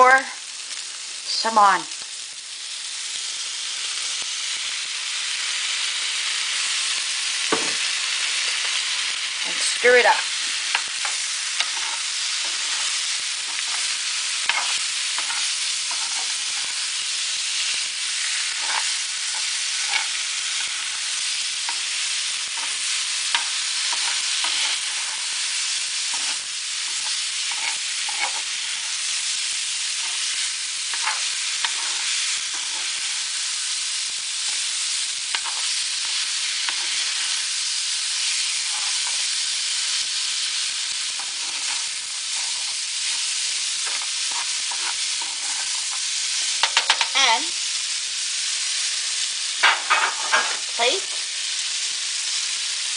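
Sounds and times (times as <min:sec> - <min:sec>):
food sizzling in a frying pan: 0:00.0 - 0:52.9
utensil tapping and scraping pan: 0:10.7 - 0:16.8, 0:18.5 - 0:20.2, 0:26.1 - 0:28.5, 0:30.9 - 0:33.1, 0:35.3 - 0:37.4, 0:41.2 - 0:43.2, 0:43.8 - 0:46.0, 0:46.6 - 0:47.1, 0:49.6 - 0:50.7.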